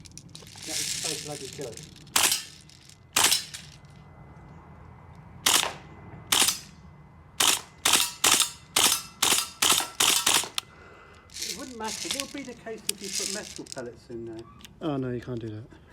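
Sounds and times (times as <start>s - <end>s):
airsoft rifle shots: 2.2s - 2.5s, 3.1s - 3.6s, 5.4s - 6.7s, 7.4s - 10.6s.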